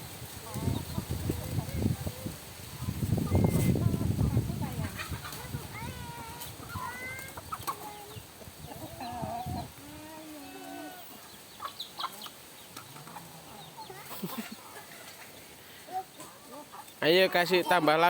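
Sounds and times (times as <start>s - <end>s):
chickens clucking: 0.0s - 18.0s
chicks chirping: 0.4s - 9.8s, 10.8s - 18.0s.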